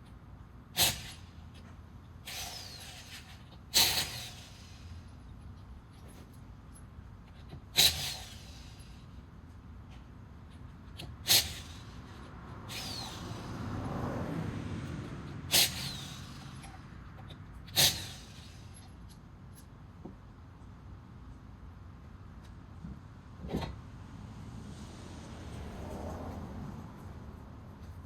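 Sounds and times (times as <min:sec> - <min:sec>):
impact wrench bursts: 0:00.8 - 0:06.3, 0:07.3 - 0:09.2, 0:10.6 - 0:13.7, 0:15.4 - 0:19.7
tool spinning down whine: 0:12.7 - 0:14.0, 0:15.5 - 0:16.8.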